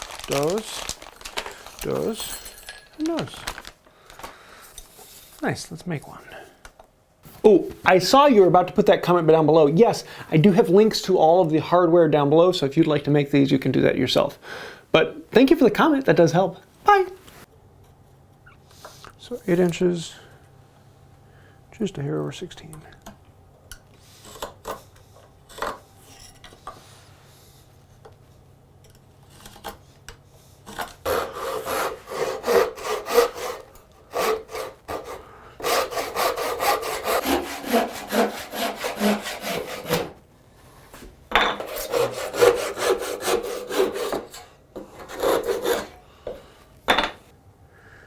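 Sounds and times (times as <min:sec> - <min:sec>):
faint handling sounds: 0:00.0 - 0:07.9
hand saw cutting wood: 0:30.7 - 0:40.2, 0:41.6 - 0:46.0.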